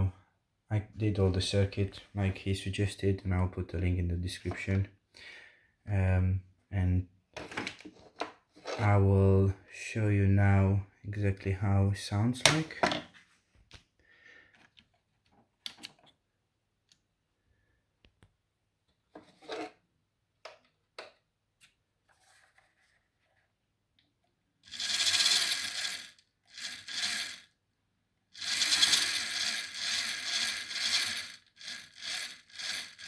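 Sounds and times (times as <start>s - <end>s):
motor and gearbox whirring: 24.6s - 27.5s, 28.4s - 33.0s.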